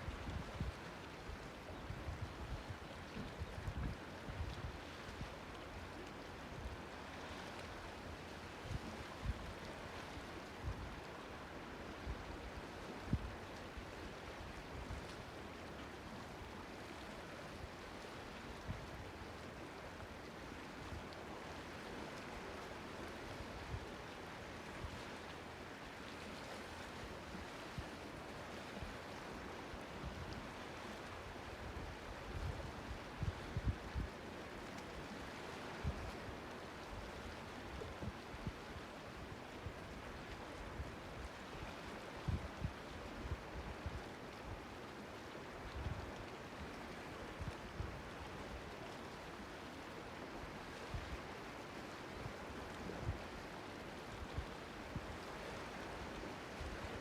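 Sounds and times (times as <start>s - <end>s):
seawater washing and lapping: 0.0s - 57.0s.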